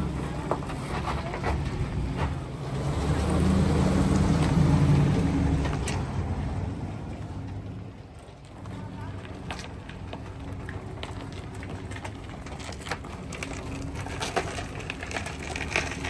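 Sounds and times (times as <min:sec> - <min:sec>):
vehicle engine drone passing: 0:00.0 - 0:16.0.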